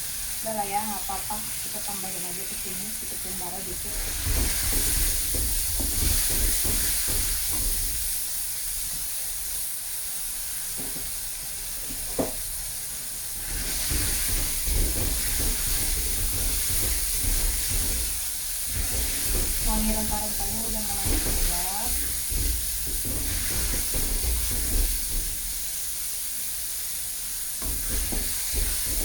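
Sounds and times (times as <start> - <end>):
spice paste sizzling in hot oil: 0.0 - 29.0
spatula scraping and stirring: 1.8 - 8.3, 13.4 - 25.9, 27.6 - 29.0.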